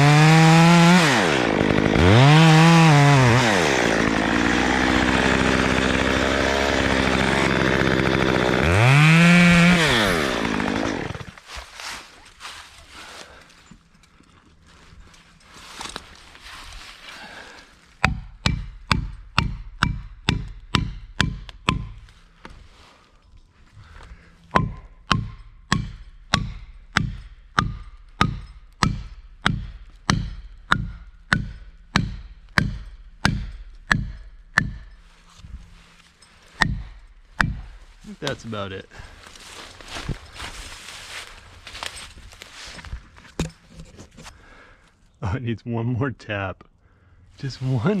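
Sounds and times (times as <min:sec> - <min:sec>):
chainsaw idling and revving: 0:00.0 - 0:11.5
hammer striking a wedge: 0:18.0 - 0:22.0, 0:24.5 - 0:35.0, 0:36.6 - 0:37.8, 0:43.4 - 0:43.6.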